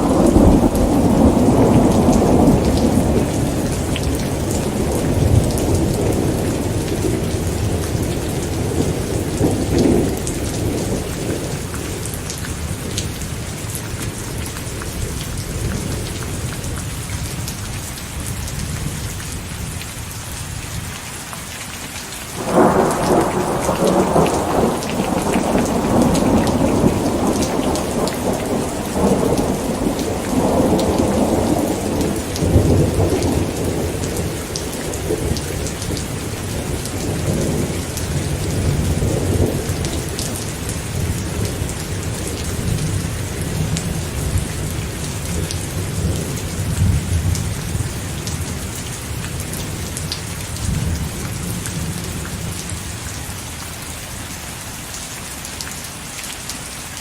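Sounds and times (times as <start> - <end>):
thunderclap rolling: 0.0 - 11.6, 22.4 - 47.8
steady rain: 0.0 - 57.0.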